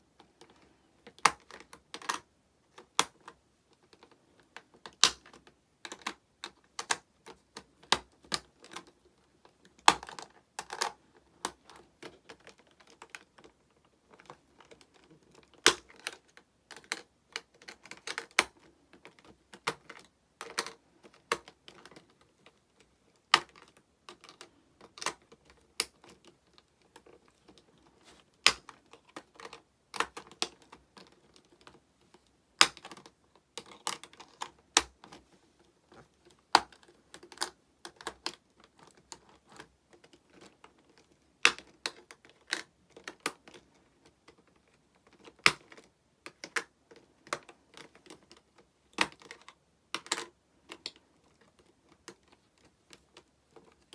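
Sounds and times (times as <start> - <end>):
hard plastic pieces clicking: 23.2 - 35.2.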